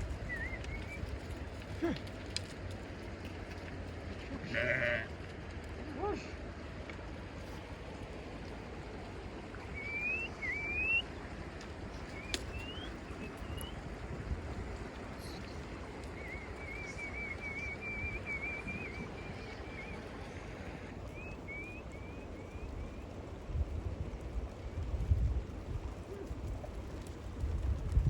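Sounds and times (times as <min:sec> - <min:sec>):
whistled notes: 0:00.2 - 0:01.1, 0:09.7 - 0:11.1, 0:12.1 - 0:13.8, 0:16.1 - 0:20.0, 0:21.1 - 0:23.1.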